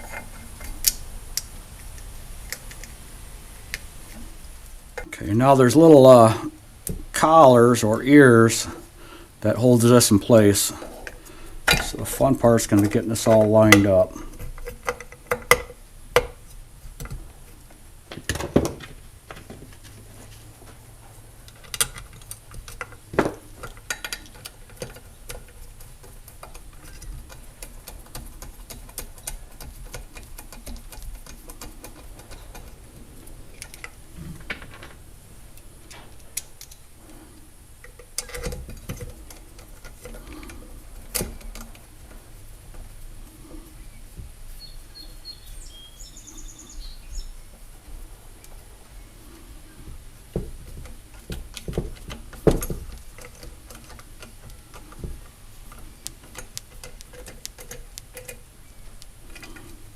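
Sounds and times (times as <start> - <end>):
small metallic clicks and clinks: 23.6 - 32.8, 55.7 - 59.8.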